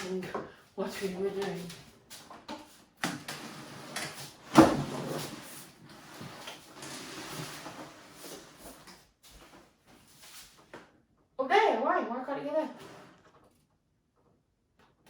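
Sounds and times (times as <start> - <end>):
rustling and light scraping: 0.8 - 10.9.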